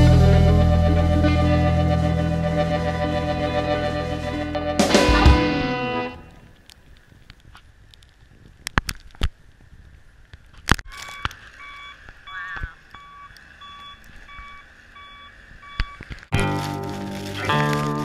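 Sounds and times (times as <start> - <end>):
reversing alarm beeping: 11.1 - 16.0.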